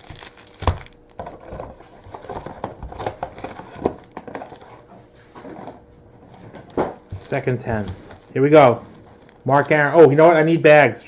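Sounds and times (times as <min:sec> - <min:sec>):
crinkling wrappers: 0:00.0 - 0:04.7, 0:06.4 - 0:10.4.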